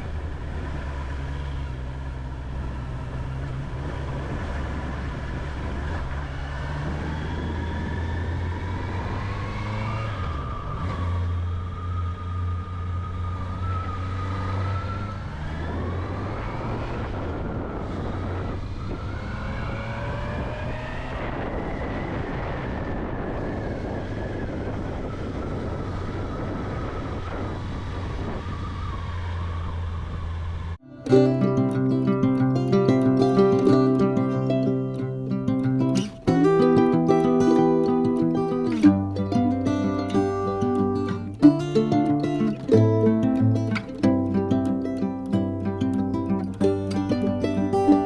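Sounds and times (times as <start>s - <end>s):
motorcycle engine accelerating: 0.0s - 21.5s
wind rush: 15.6s - 29.0s.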